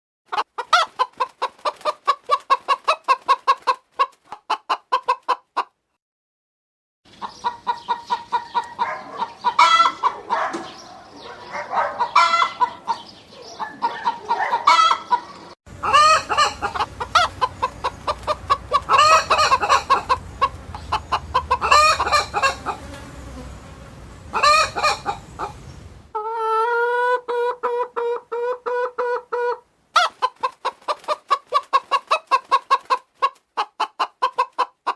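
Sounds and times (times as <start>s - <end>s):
chickens clucking and cackling: 0.3s - 5.8s, 7.1s - 34.9s
long drawn-out chicken call: 7.4s - 10.4s, 12.0s - 13.0s, 13.6s - 30.2s.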